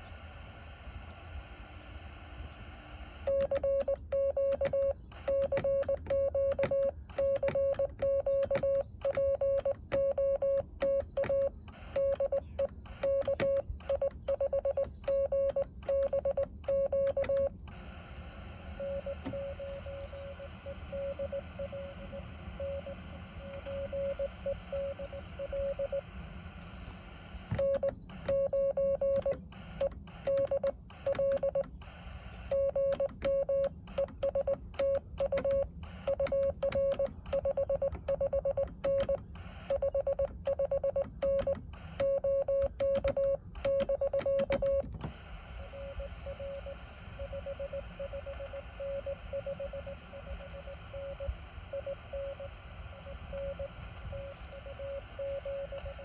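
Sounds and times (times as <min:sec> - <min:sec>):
radio band hiss: 0:00.0 - 0:56.0
morse code tones: 0:02.4 - 0:56.0.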